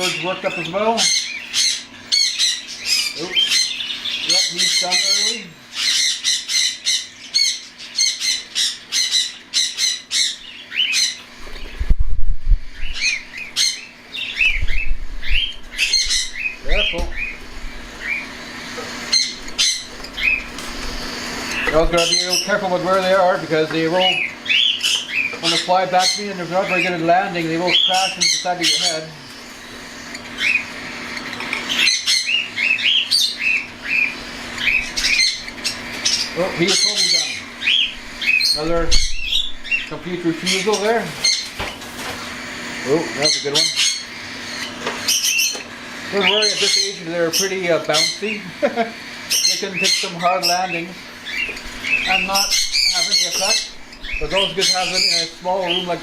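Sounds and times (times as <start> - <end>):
cockatiels squawking: 0.0 - 11.9, 12.6 - 56.0
bird chirps rising and falling: 12.7 - 17.4, 19.0 - 20.5, 21.5 - 29.1, 30.4 - 41.5, 49.3 - 56.0.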